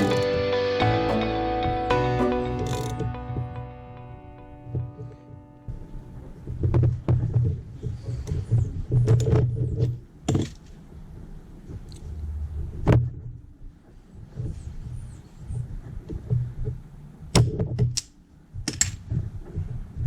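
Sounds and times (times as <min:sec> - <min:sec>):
low handling rumble: 0:00.0 - 0:14.8
metal tool clicks and knocks: 0:18.7 - 0:19.1.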